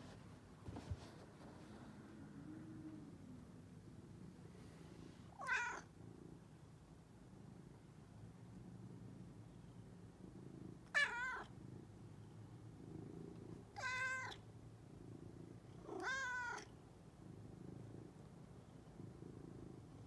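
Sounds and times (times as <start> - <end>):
cat purring: 0.8 - 20.0
cat meowing: 5.4 - 5.8, 10.9 - 11.5, 13.8 - 14.4, 15.9 - 16.7.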